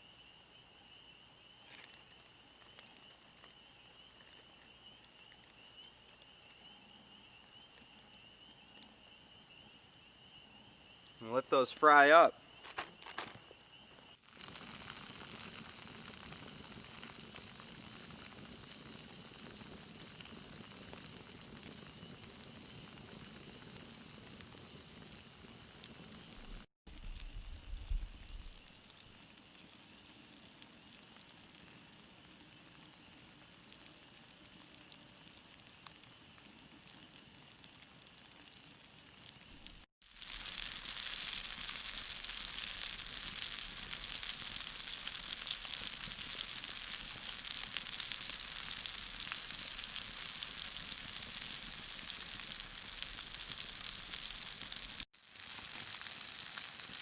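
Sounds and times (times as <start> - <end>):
fish frying in oil: 14.1 - 57.0.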